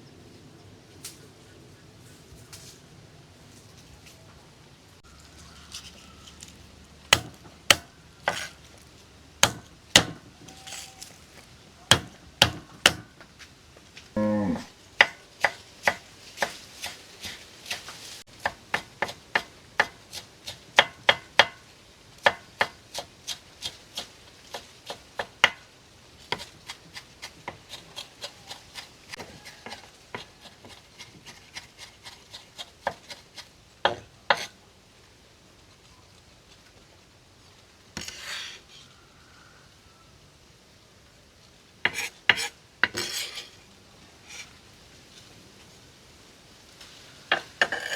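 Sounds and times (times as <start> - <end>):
knife chopping on wooden board: 7.1 - 8.6, 9.4 - 10.6, 11.9 - 13.1, 41.9 - 43.2.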